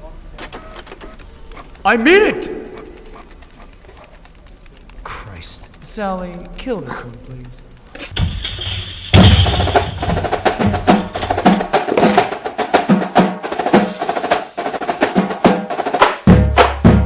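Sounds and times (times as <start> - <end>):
fast percussion beat: 8.1 - 17.0.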